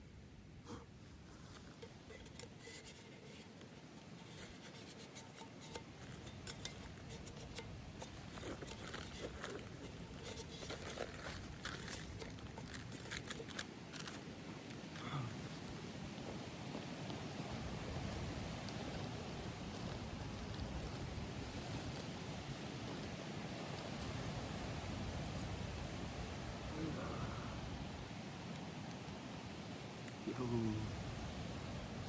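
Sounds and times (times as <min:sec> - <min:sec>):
light crinkling: 0:00.7 - 0:26.0.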